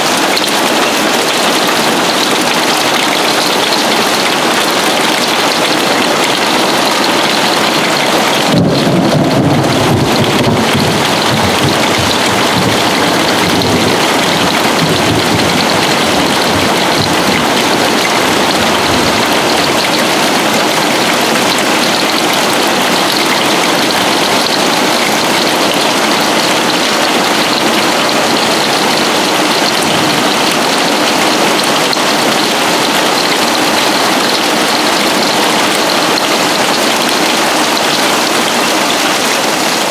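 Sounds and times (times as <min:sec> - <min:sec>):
heavy hail pounding on roof: 0:00.0 - 0:39.9
thunder rumble: 0:08.4 - 0:20.5, 0:29.4 - 0:31.8.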